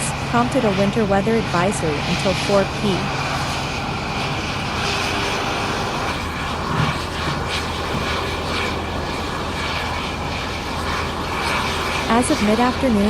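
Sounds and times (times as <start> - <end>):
low engine hum: 0.0 - 13.0
road and wind noise hiss: 0.0 - 13.0.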